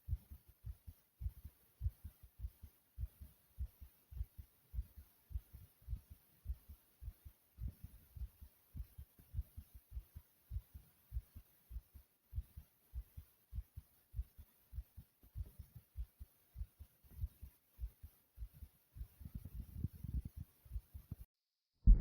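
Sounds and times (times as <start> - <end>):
heart beating: 0.0 - 22.0.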